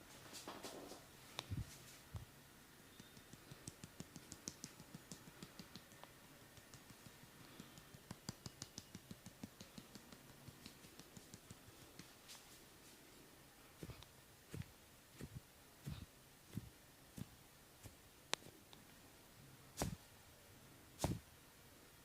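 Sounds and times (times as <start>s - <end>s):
percussive massage taps: 3.0s - 12.2s, 13.8s - 17.4s, 19.8s - 20.0s, 21.0s - 21.2s.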